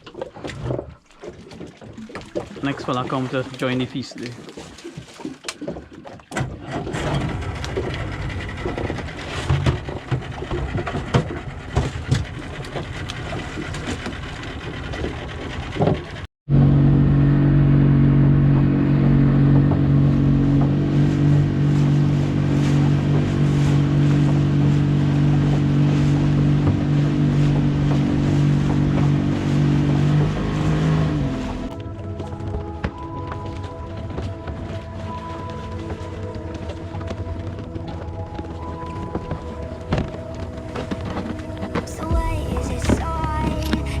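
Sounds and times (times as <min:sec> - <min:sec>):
knocks and clatter: 0:05.5 - 0:16.3
boat engine running loudly: 0:06.9 - 0:44.0
noisy background: 0:31.2 - 0:44.0.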